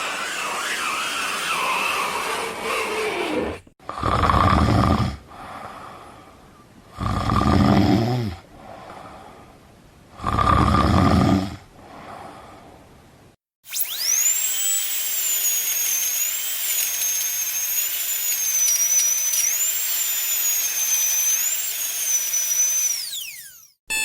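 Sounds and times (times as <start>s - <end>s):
person snoring: 3.8s - 6.0s, 7.0s - 9.2s, 10.2s - 12.5s.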